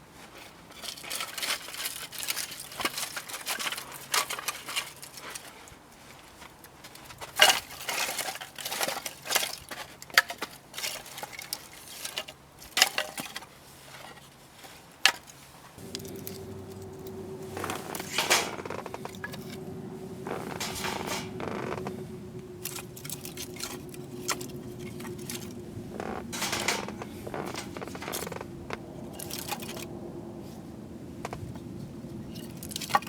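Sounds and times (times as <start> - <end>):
gear rustling and clattering: 15.8 - 33.0.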